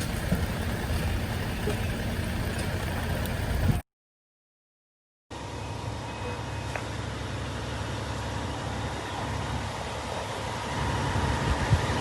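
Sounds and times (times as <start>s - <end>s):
low engine-like rumble: 0.0s - 3.8s.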